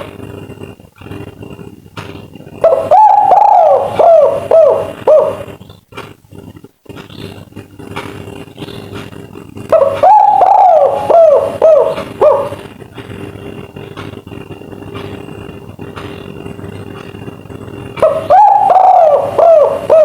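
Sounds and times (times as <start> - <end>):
faint steady hum: 0.0 - 20.0
dove cooing: 2.4 - 5.8, 8.6 - 14.0, 15.9 - 20.0.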